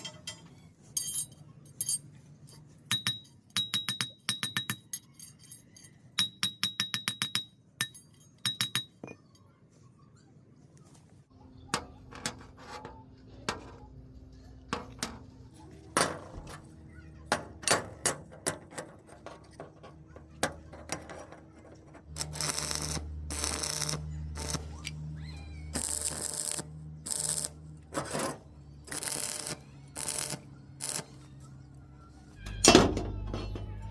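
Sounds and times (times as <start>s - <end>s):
metal clinking: 0.0s - 9.2s
loud crackling noise: 22.1s - 24.7s, 25.7s - 27.6s, 28.8s - 31.1s.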